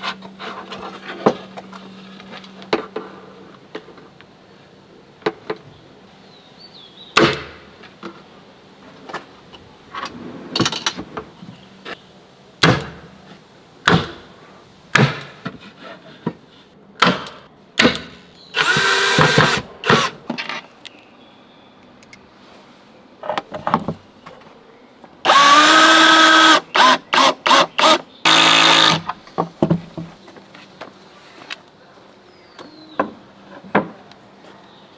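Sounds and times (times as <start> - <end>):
electric drill driving screws: 18.6 - 20.1, 25.3 - 29.0.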